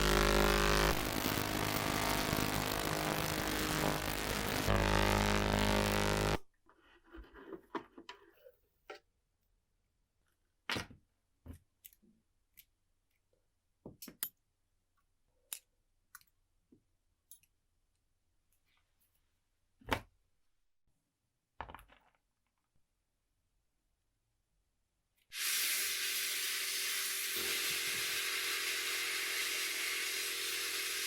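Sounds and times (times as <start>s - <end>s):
loud running machine: 0.0s - 6.4s.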